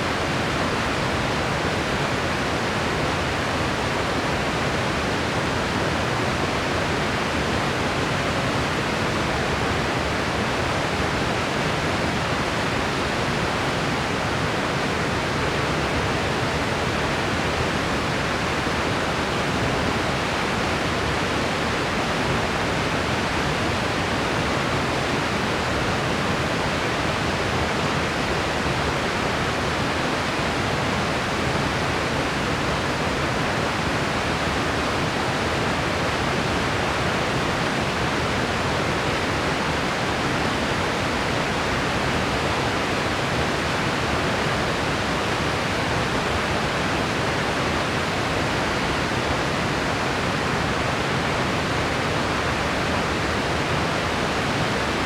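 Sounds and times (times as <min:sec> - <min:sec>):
white noise hiss: 0:00.0 - 0:55.0.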